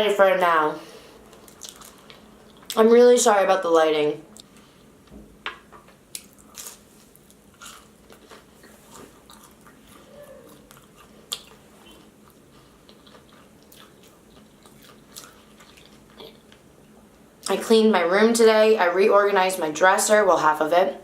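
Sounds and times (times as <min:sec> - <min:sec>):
person chewing food: 0:06.1 - 0:17.2.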